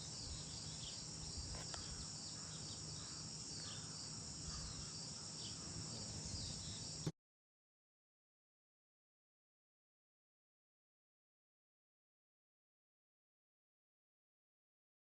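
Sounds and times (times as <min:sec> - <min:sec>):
insect chorus trilling: 0:00.0 - 0:07.1.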